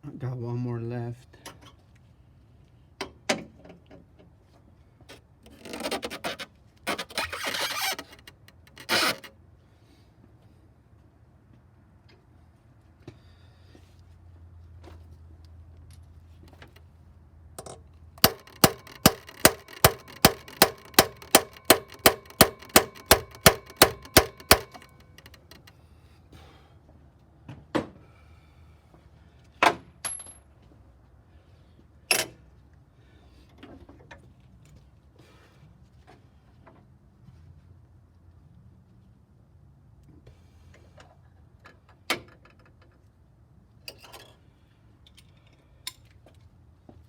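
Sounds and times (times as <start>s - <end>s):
hammer striking steel chisel: 18.2s - 25.7s.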